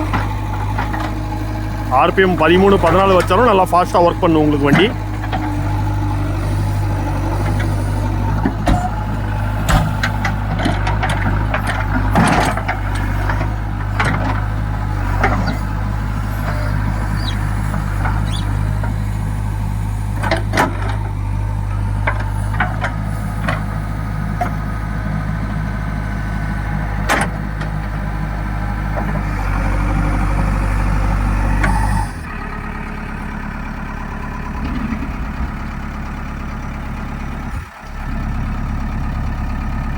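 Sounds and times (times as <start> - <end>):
diesel engine running: 0.0 - 39.9
knocks and clanks of working gear: 9.6 - 14.5.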